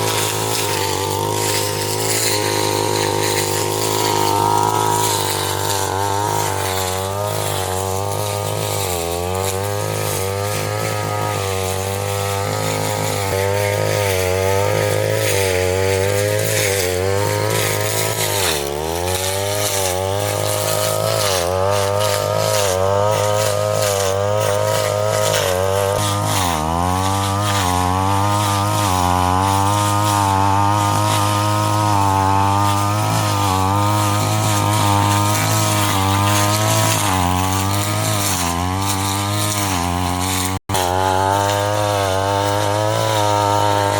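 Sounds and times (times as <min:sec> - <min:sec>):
small petrol engine running: 0:00.0 - 0:43.9.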